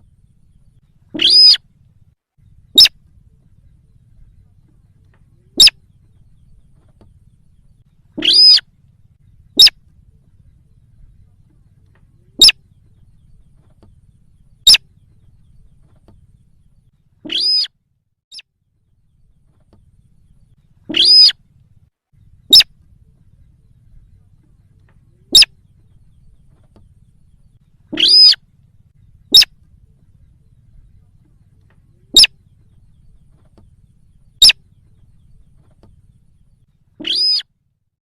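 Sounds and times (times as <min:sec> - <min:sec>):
short sharp bird calls: 0:00.0 - 0:01.7, 0:02.7 - 0:03.0, 0:05.3 - 0:07.0, 0:08.0 - 0:08.7, 0:09.5 - 0:09.8, 0:12.1 - 0:13.7, 0:14.6 - 0:15.0, 0:17.2 - 0:17.7, 0:20.8 - 0:21.4, 0:22.4 - 0:22.8, 0:25.0 - 0:26.8, 0:27.8 - 0:28.5, 0:29.1 - 0:29.6, 0:31.9 - 0:33.5, 0:34.1 - 0:36.0, 0:36.9 - 0:37.5
drawn-out bird calls: 0:00.0 - 0:17.7, 0:19.0 - 0:37.5.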